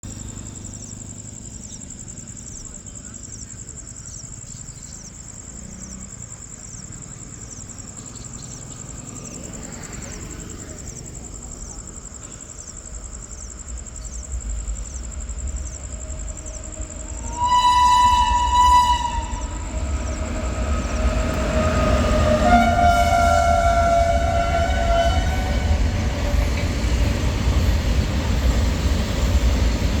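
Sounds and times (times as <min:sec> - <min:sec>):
low rumble of running train: 0:00.0 - 0:30.0
insect trilling: 0:00.1 - 0:29.9
train horn blast: 0:17.2 - 0:26.7.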